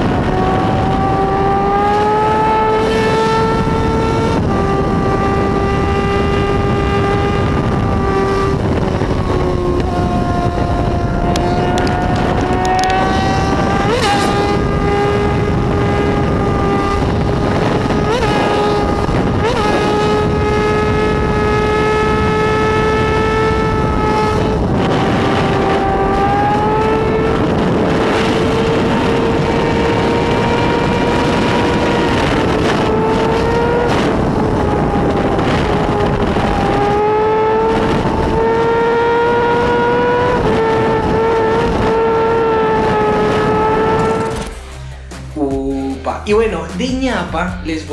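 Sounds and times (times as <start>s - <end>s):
motorcycle engine at high revs: 0.0s - 44.6s.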